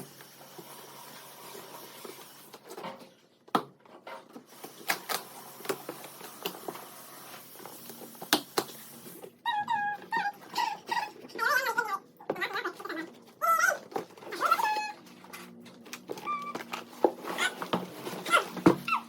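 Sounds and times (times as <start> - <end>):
stroller packaging rustling: 14.3 - 19.0.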